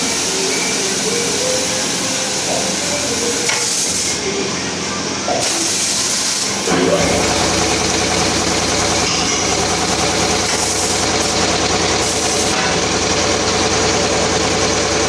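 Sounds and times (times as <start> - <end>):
steady machine hiss: 0.0 - 4.5, 5.3 - 12.8
motor hum: 0.0 - 15.0.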